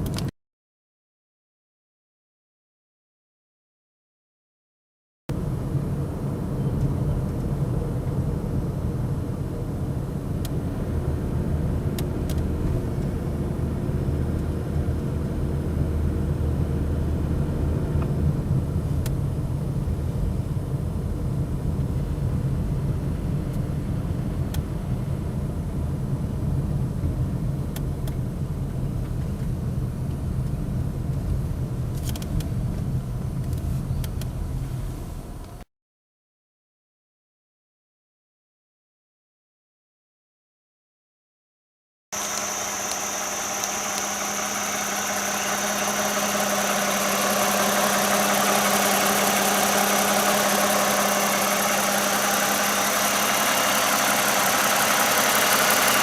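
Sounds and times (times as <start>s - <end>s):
car engine running: 42.2s - 56.0s
sharp engine ticks: 42.2s - 56.0s.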